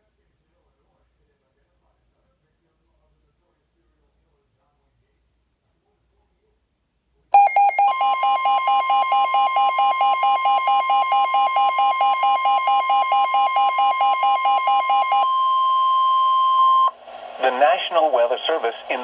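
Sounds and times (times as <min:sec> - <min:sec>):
rapid electronic beeping: 0:07.4 - 0:15.2
steady high tone: 0:07.4 - 0:19.0.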